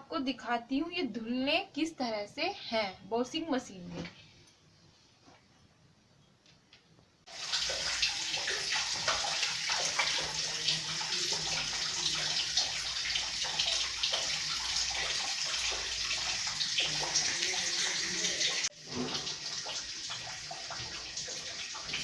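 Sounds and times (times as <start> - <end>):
water pouring into washing machine: 7.3 - 22.0.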